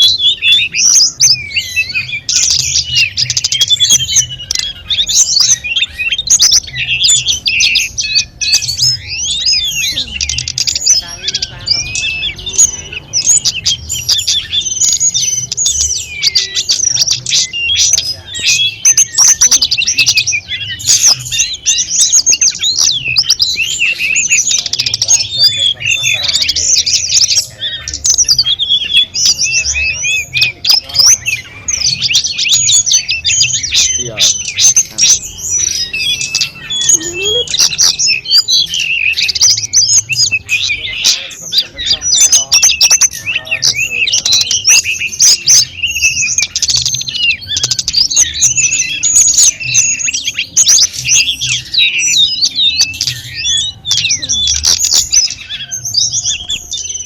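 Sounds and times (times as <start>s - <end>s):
songbird singing chirps and trills: 0.0s - 57.0s.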